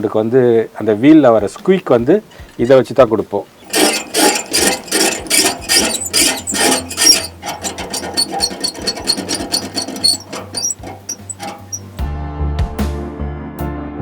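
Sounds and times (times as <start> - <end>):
rhythmic rubbing squeaks of cord: 3.6 - 11.9.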